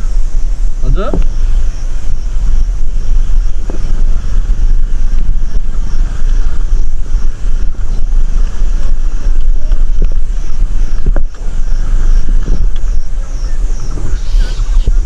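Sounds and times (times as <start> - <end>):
scooter on rough road: 0.0 - 15.0
wind buffeting microphone: 0.0 - 15.0.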